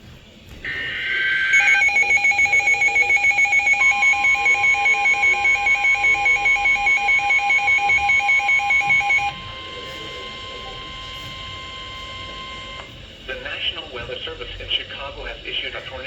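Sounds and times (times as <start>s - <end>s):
steady electronic tone: 0.6s - 13.0s
fast warbling electronic alarm: 0.6s - 14.0s.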